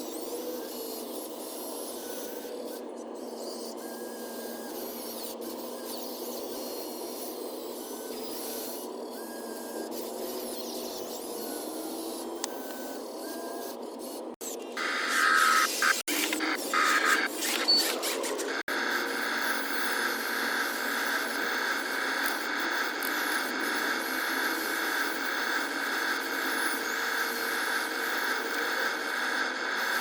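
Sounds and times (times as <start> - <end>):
short high whines: 14.4 - 18.8
scraping rasping dirt noise: 15.6 - 18.7.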